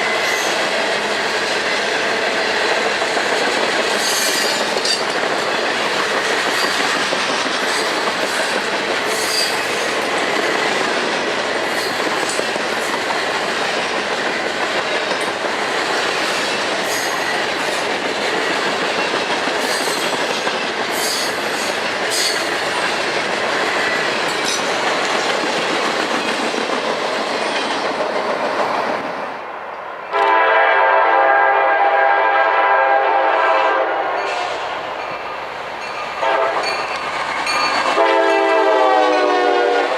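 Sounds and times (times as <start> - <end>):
freight train rolling past: 0.0 - 39.9
train wheel clicks: 0.5 - 29.1
locomotive air horn: 30.1 - 34.5, 36.2 - 36.7, 38.0 - 39.9.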